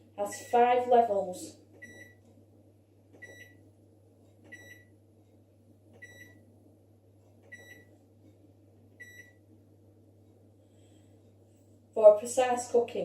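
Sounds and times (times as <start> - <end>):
faint steady hum: 0.0 - 13.0
microwave short beeps: 3.2 - 3.6, 4.5 - 4.9, 6.0 - 6.4, 7.5 - 7.9, 9.0 - 9.4.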